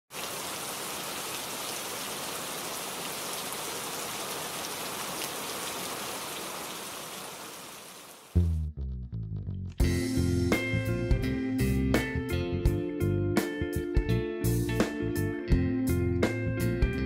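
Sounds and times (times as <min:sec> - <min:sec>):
rain-like hiss with patter: 0:00.1 - 0:08.4.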